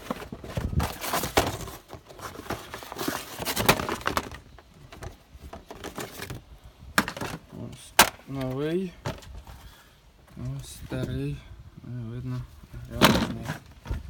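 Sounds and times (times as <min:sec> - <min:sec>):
plastic air filter box handled: 0:00.0 - 0:11.2, 0:12.3 - 0:14.0.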